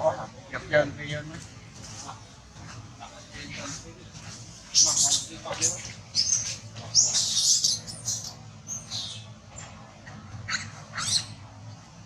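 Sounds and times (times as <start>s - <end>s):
macaque squealing: 4.7s - 9.3s, 10.5s - 11.4s.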